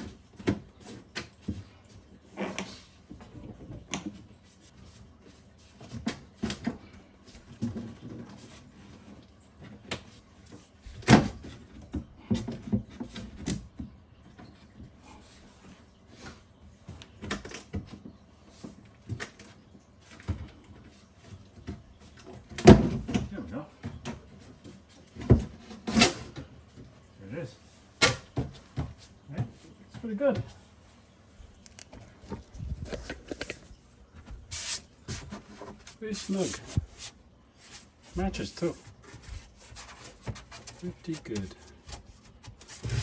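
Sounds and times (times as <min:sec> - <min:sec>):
wooden panel knocks and scrapes: 0:34.5 - 0:43.0.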